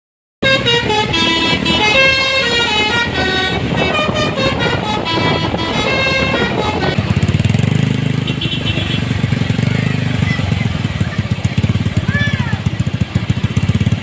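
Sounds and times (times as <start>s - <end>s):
multi-tone musical bus horn: 0.4s - 9.3s
engine low pulsing: 0.4s - 14.0s.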